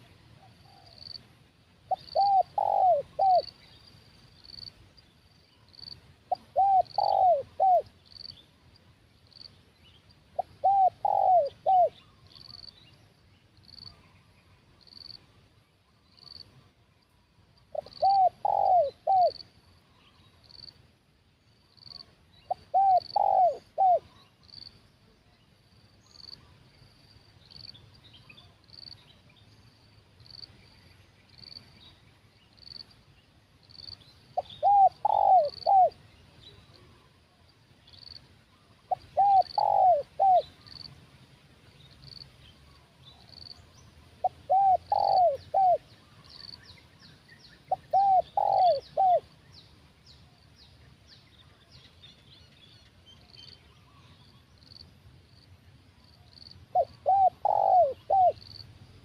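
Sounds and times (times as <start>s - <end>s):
dove cooing: 1.9s - 3.6s, 6.3s - 7.9s, 10.4s - 12.6s, 17.7s - 19.4s, 22.5s - 24.2s, 34.4s - 37.1s, 38.7s - 40.8s, 44.2s - 46.4s, 47.7s - 49.3s, 56.7s - 58.5s.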